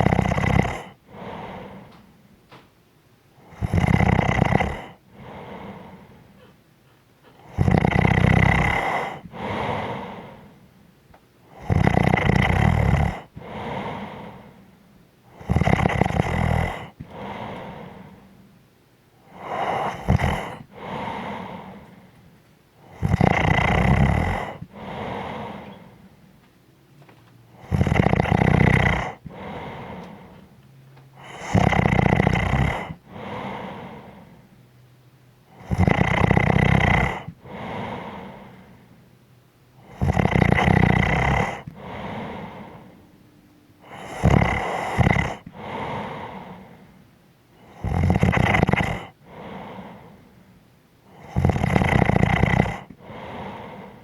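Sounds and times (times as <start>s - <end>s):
person snoring: 0.0s - 2.0s, 3.4s - 6.4s, 7.3s - 10.6s, 11.5s - 14.7s, 15.3s - 18.3s, 19.2s - 22.2s, 22.8s - 26.2s, 27.5s - 30.5s, 31.2s - 34.4s, 35.5s - 38.9s, 39.8s - 43.0s, 43.8s - 47.0s, 47.6s - 50.3s, 51.1s - 54.0s
breathy exhale: 0.8s - 2.2s, 4.6s - 6.6s, 8.6s - 10.8s, 13.0s - 14.8s, 15.5s - 18.5s, 19.3s - 22.3s, 24.0s - 26.3s, 27.6s - 34.6s, 37.0s - 39.0s, 39.8s - 43.2s, 43.8s - 47.0s, 47.6s - 54.0s.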